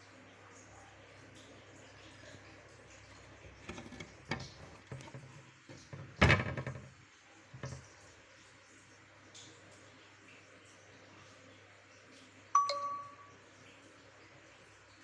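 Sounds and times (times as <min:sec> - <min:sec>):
irregular knocks and bumps: 0:03.6 - 0:06.9.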